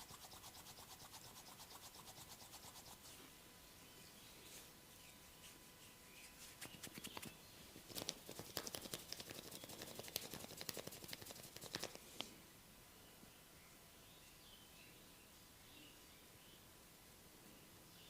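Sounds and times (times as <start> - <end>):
massage hands clicking and patting skin: 6.6 - 7.3, 7.9 - 12.0.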